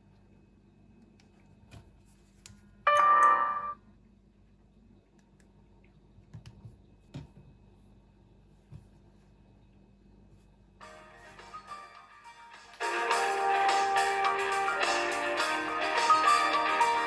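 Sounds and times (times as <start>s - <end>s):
short electronic tone: 2.9s - 3.8s.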